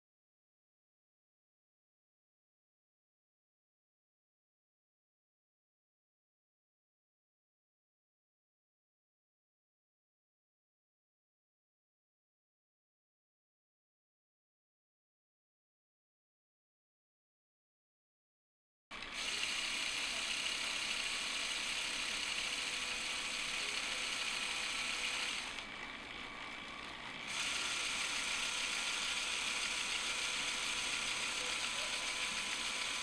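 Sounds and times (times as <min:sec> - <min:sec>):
electric motor and gears whirring: 0:18.9 - 0:33.0.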